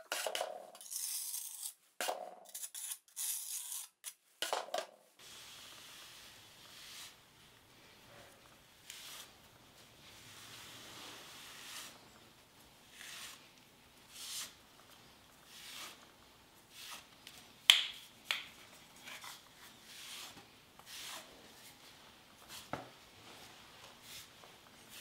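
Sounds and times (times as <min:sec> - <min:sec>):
trowel scraping grout on tile: 0:00.0 - 0:04.8, 0:10.3 - 0:12.1, 0:12.9 - 0:13.5, 0:14.1 - 0:14.6, 0:15.4 - 0:16.1, 0:16.7 - 0:17.1, 0:18.9 - 0:21.8.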